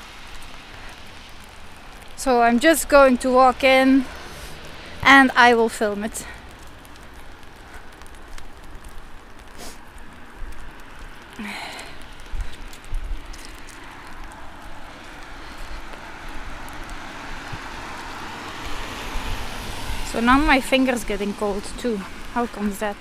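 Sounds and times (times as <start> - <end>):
steady rain falling: 0.0 - 23.0.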